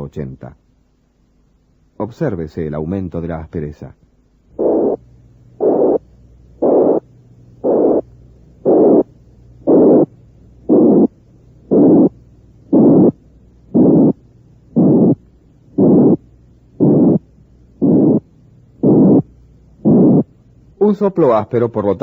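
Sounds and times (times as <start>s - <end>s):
simulated heart murmur: 4.6s - 5.0s, 5.6s - 6.0s, 6.6s - 7.0s, 7.6s - 8.0s, 8.6s - 9.1s, 9.7s - 10.1s, 10.7s - 11.1s, 11.7s - 14.2s, 14.8s - 15.2s, 15.8s - 16.2s, 16.8s - 20.3s.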